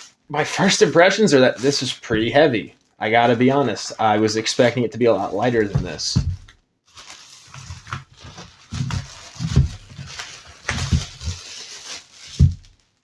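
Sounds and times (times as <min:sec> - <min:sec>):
packaging rustling: 0:00.0 - 0:13.0
knocks of handling: 0:05.4 - 0:06.6.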